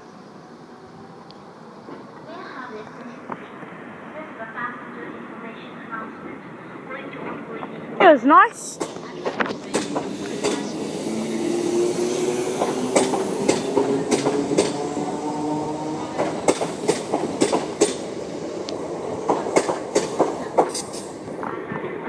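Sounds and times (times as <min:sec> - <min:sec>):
train wheels clicking over rail joints: 0:08.0 - 0:21.6
train motor hum: 0:08.7 - 0:21.5.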